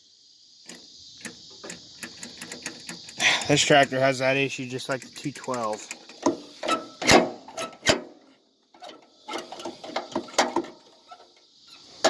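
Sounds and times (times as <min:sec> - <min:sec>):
sharp mechanical clicks and knocks: 0:00.6 - 0:08.1.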